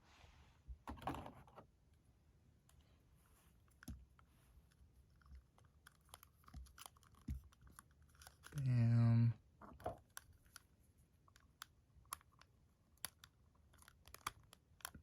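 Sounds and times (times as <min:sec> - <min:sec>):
plastic figure parts clicking: 0:05.2 - 0:08.6, 0:11.3 - 0:15.0.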